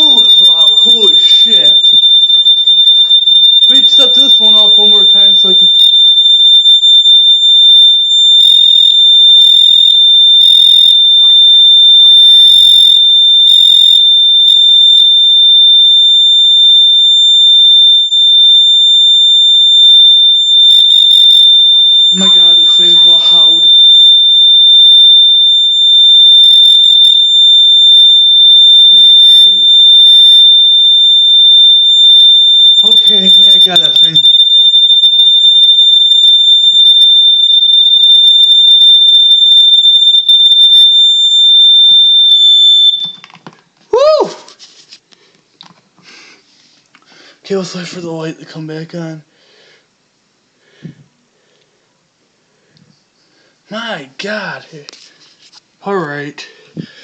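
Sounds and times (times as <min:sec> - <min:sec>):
smoke alarm high tone: 0:00.0 - 0:43.4, 0:53.7 - 0:54.9.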